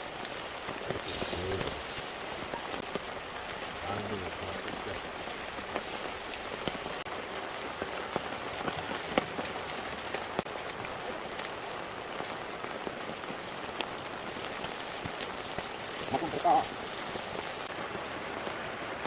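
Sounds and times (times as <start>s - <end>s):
food sizzling in a pan: 0.0s - 7.2s, 10.6s - 18.6s.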